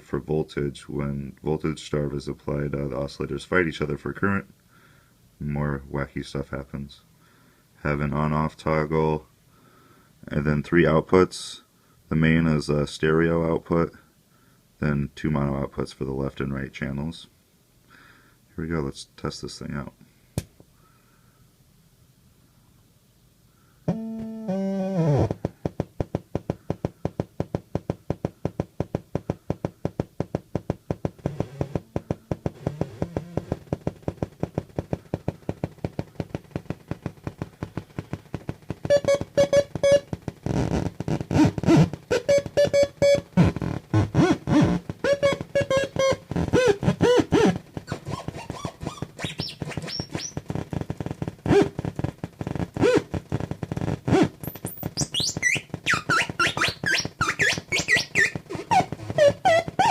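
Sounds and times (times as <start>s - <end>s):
falling electronic tones: 23.9s - 25.3s, 38.9s - 40.1s, 54.4s - 58.4s
buzzing tones and bleeps: 38.9s - 40.1s, 41.7s - 43.3s, 54.4s - 58.4s
fast pulse of clicks: 44.8s - 59.9s.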